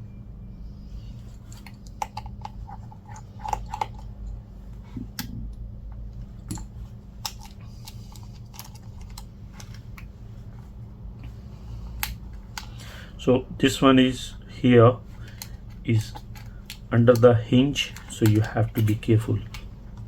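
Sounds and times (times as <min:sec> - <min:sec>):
steady low hum: 0:00.0 - 0:20.0
small tools clicking and tapping: 0:06.4 - 0:10.1.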